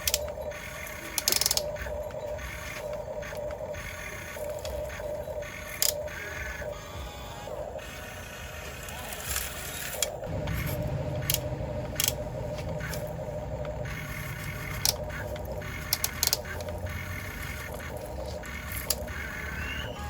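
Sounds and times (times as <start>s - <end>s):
sharp plastic clicks: 0.0s - 5.0s, 5.6s - 6.3s, 10.0s - 19.4s
small motor whirring: 0.0s - 20.0s.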